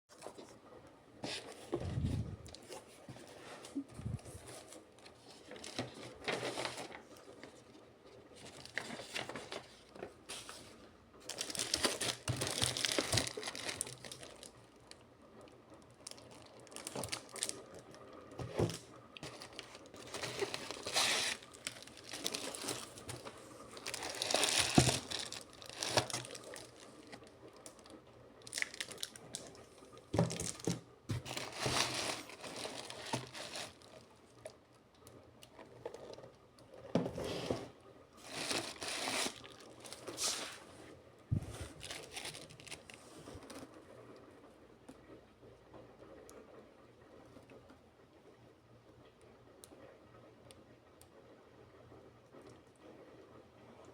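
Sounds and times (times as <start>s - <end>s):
packaging wrapping tearing and crinkling: 11.2s - 14.6s, 16.1s - 17.9s, 18.7s - 29.5s, 30.2s - 34.1s, 38.2s - 40.6s, 41.7s - 43.0s.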